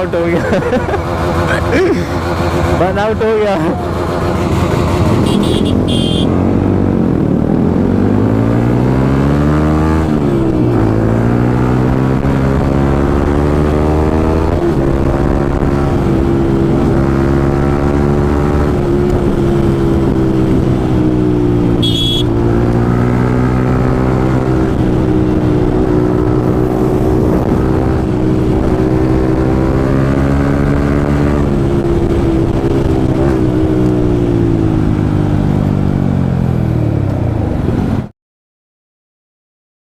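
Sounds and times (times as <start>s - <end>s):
motorcycle engine running: 0.0s - 8.2s, 10.2s - 29.8s.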